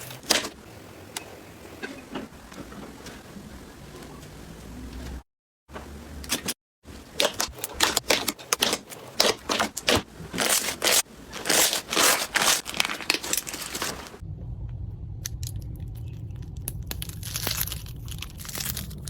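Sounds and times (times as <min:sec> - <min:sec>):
slime crackling and popping: 0:15.2 - 0:19.0.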